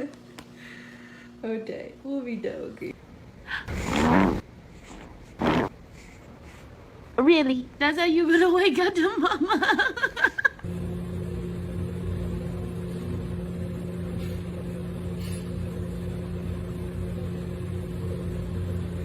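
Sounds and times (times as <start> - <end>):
woman's voice: 1.4 - 3.0, 7.2 - 9.6
machine humming: 10.6 - 19.0.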